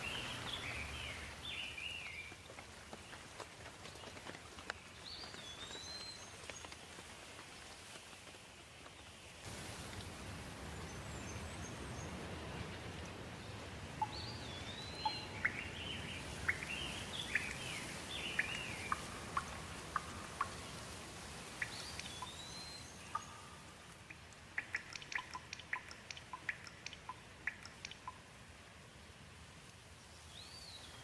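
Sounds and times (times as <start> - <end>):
steady rain: 0.0 - 31.0
water drips: 9.4 - 28.4
songbird whistling: 14.0 - 19.5, 21.6 - 23.5.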